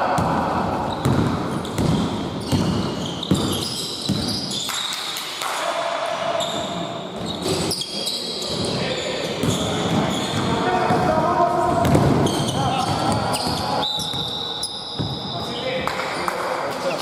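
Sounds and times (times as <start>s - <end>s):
basketball bouncing on court: 0.1s - 4.5s, 11.7s - 14.4s, 15.0s - 15.2s
sneakers squeaking on floor: 0.8s - 5.2s, 6.2s - 11.1s, 11.7s - 16.2s.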